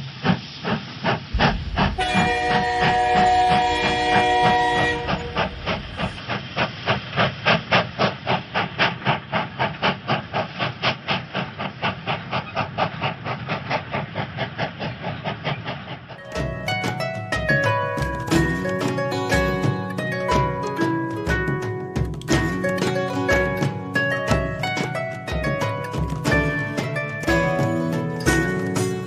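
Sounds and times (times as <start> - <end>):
steam engine chuffing: 0.0 - 29.0
steam locomotive whistle: 1.4 - 6.2.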